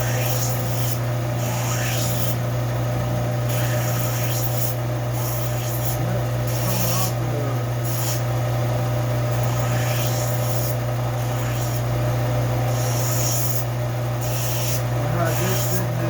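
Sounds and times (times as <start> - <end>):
steady low hum: 0.0 - 16.0
steel blade scraping on abrasive: 3.5 - 7.2, 7.8 - 8.3, 9.3 - 11.9, 12.7 - 16.0.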